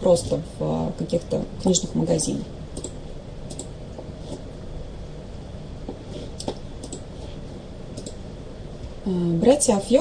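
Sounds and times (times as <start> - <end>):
low background hum: 0.0 - 10.0.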